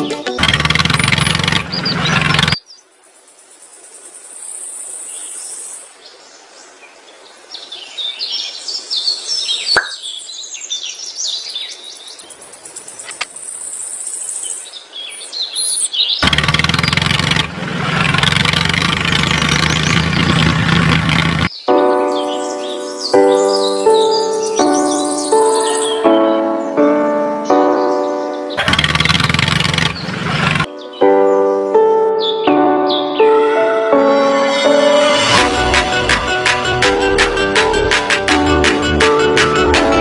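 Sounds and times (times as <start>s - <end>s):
birds chirping: 0.0s - 2.9s, 7.6s - 33.5s
light steady hiss: 2.7s - 10.5s
loud background music: 33.9s - 40.0s.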